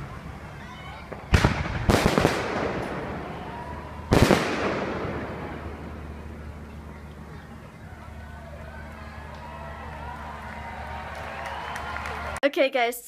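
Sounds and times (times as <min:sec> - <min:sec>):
fireworks bursting loudly: 0:01.0 - 0:06.6.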